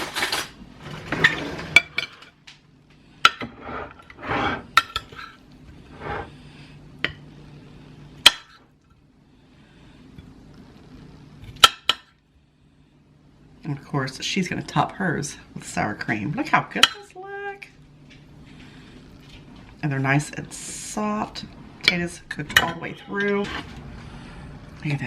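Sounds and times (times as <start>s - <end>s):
faint steady hum: 0.0s - 25.0s
dishes and cutlery clinking: 3.2s - 5.4s.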